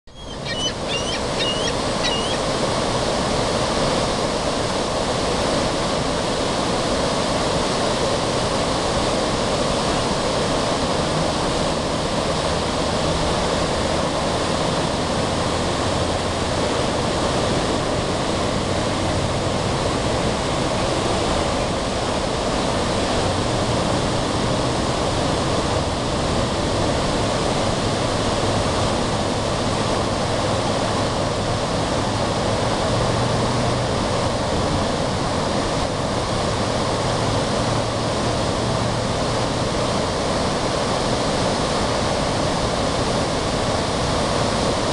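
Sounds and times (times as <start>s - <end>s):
bird chirps: 0.1s - 2.4s
river water flowing: 0.1s - 44.9s.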